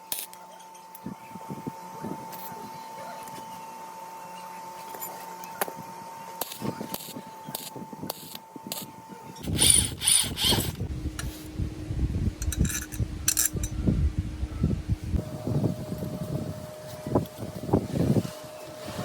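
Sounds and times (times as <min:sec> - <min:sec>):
metal tools clicking and knocking: 0:12.4 - 0:13.8.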